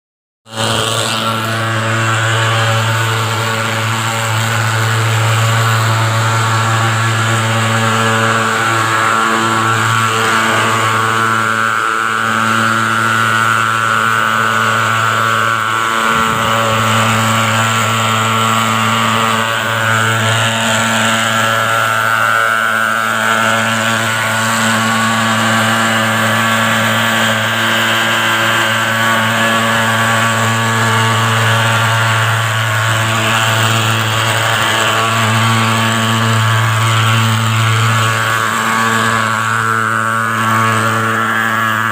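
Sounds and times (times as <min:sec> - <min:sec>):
fogging machine buzzing drone: 0:00.5 - 0:41.9.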